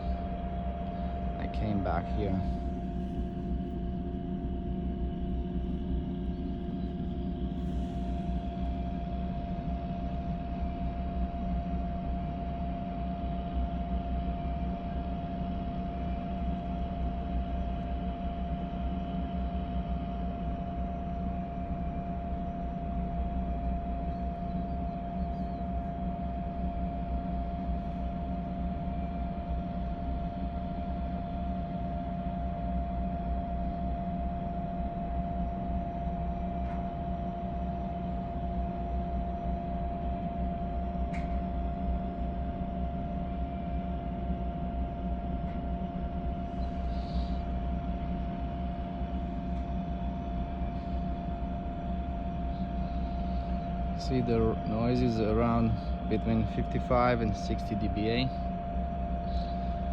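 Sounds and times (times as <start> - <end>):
drilling rig machinery drone: 0.0 - 8.6, 45.4 - 59.9.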